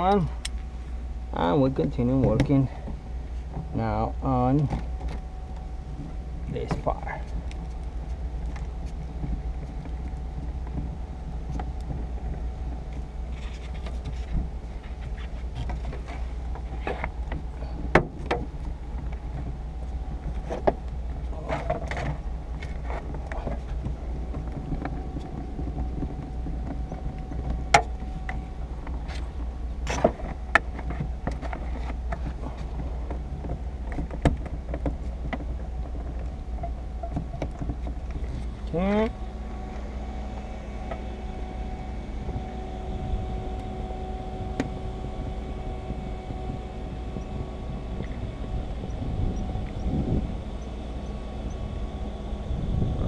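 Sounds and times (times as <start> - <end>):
low rumble: 0.0 - 53.0
sharp clicks and knocks: 20.2 - 38.8.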